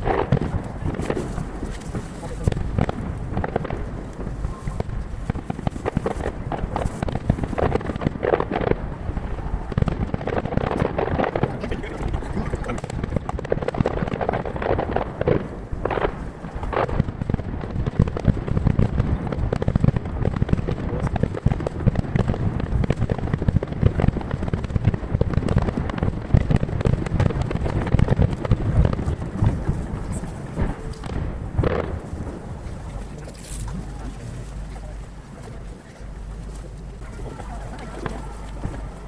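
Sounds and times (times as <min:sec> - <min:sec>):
firework shells bursting: 0:09.7 - 0:35.2.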